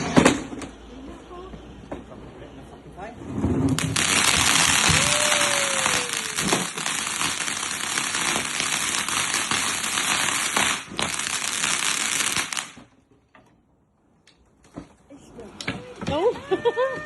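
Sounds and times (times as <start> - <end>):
firework cracks: 0.0 - 0.6, 3.6 - 12.9
firework fountain hissing: 3.3 - 12.9.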